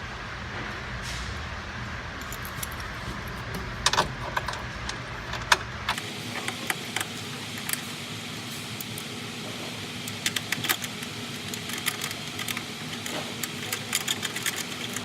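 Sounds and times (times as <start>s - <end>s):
metal hardware clinking: 2.2s - 5.6s.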